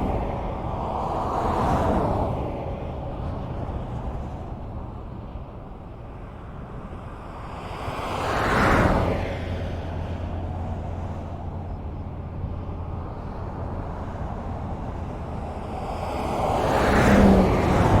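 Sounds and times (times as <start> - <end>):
highway traffic rushing: 0.0 - 18.0
vehicle passing close by: 7.8 - 18.0.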